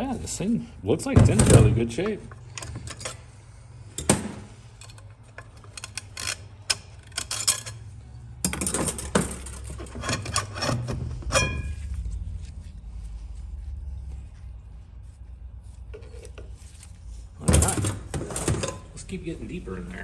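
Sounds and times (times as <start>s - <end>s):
low steady hum: 0.0s - 20.0s
metal parts clinking: 4.0s - 11.8s.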